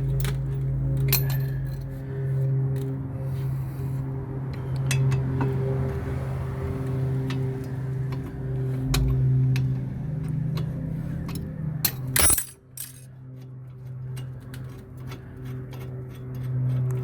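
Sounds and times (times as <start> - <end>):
metallic clank: 11.9 - 13.0
ringing clink: 11.9 - 13.0.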